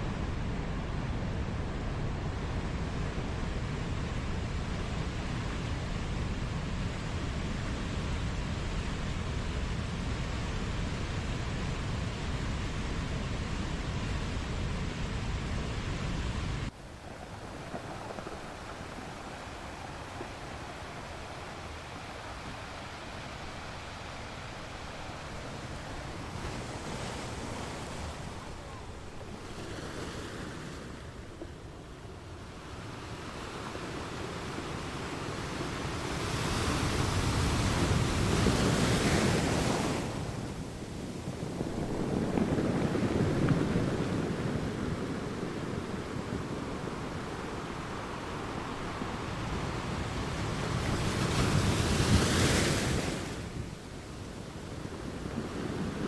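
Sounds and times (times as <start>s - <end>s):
wind buffeting microphone: 0.0s - 56.0s
stream rushing: 16.0s - 56.0s
stream water rushing: 16.7s - 30.0s.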